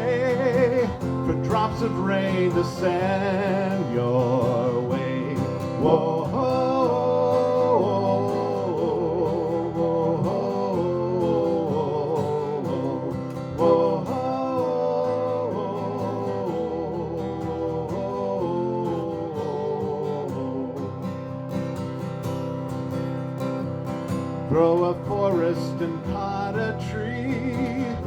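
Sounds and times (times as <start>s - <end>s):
acoustic guitar strumming: 0.0s - 28.0s.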